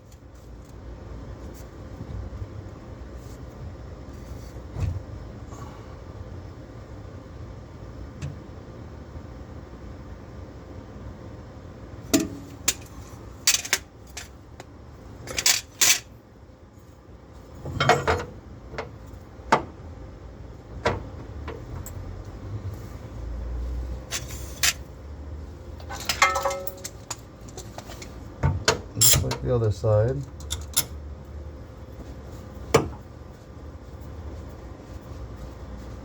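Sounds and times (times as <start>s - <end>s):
metal clinks and clanks: 25.8s - 27.2s.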